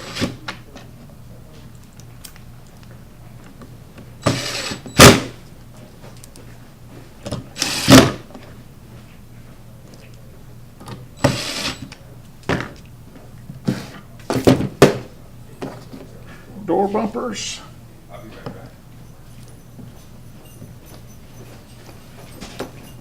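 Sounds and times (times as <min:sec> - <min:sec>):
power drill driving screws: 0:00.0 - 0:00.4, 0:04.2 - 0:05.3, 0:07.6 - 0:08.2, 0:11.2 - 0:11.9.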